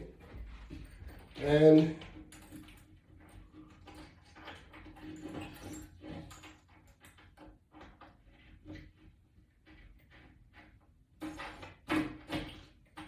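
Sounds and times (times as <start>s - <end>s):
small screws clicking and rustling: 0.7s - 8.1s.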